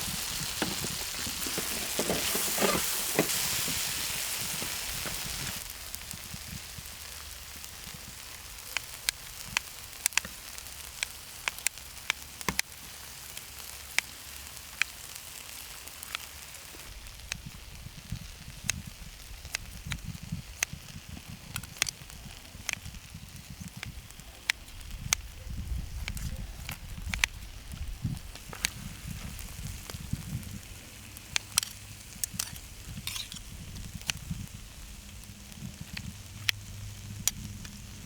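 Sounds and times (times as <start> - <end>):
octopus sizzling on a griddle: 0.0 - 38.0
sharp pops and crackles: 0.0 - 38.0
scraping stirs: 0.6 - 5.6.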